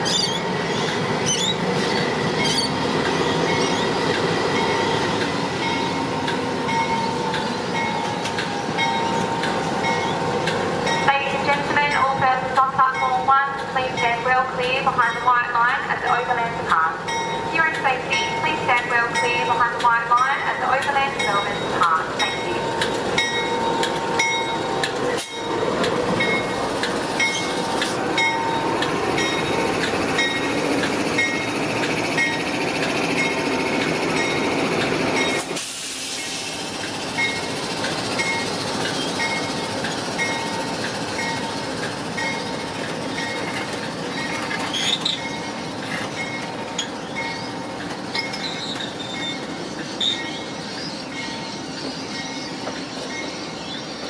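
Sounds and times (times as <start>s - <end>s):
wheels squeaking on rails: 0.0s - 12.1s, 17.1s - 54.0s
passenger train rolling: 0.0s - 54.0s.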